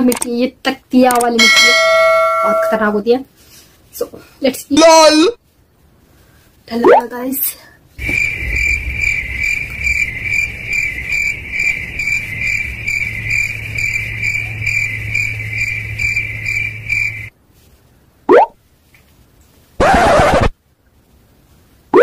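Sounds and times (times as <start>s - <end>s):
cricket chirping: 1.4s - 2.8s, 8.0s - 17.3s.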